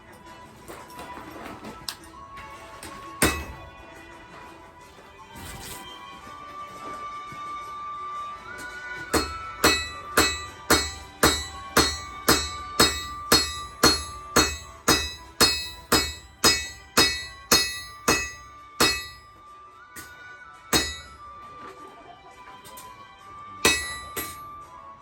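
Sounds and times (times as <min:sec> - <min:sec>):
hammer blows on steel: 0:03.2 - 0:03.7, 0:09.1 - 0:19.3, 0:20.8 - 0:21.3, 0:23.7 - 0:24.5.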